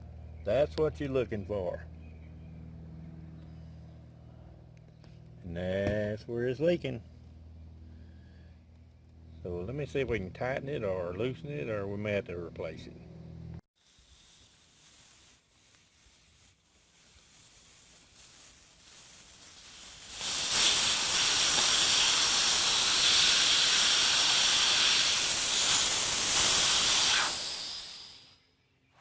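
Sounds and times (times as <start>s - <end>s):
air hissing from tire valve: 13.8s - 28.4s.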